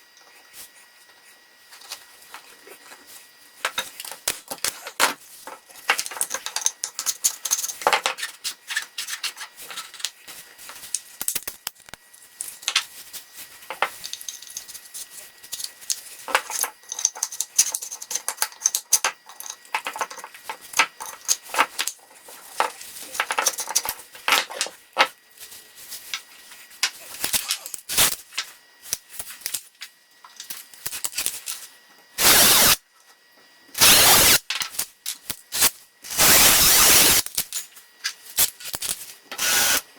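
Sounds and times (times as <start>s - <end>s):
clicks taps and scraping of tools: 3.6s - 10.2s, 13.7s - 14.8s, 15.5s - 25.1s.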